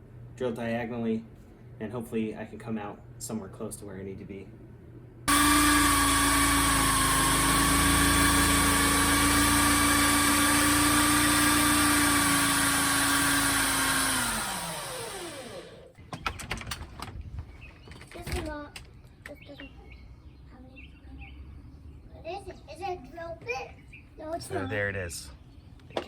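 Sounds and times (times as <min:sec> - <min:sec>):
power drill boring through wall: 0:05.3 - 0:16.0.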